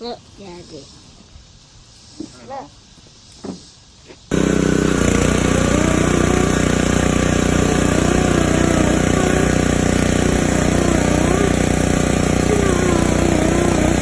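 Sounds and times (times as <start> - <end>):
pressure washer engine running: 4.3 - 14.0.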